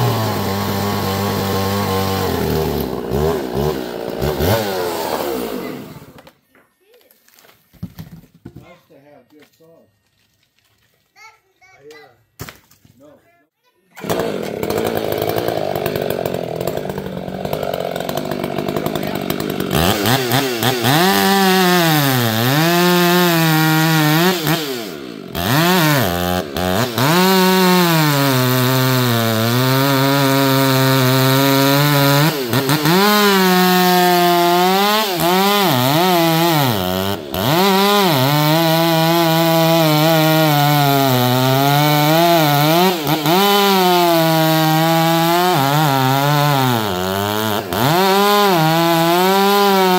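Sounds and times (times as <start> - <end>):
chainsaw cutting wood: 0.0 - 6.4, 13.9 - 49.9.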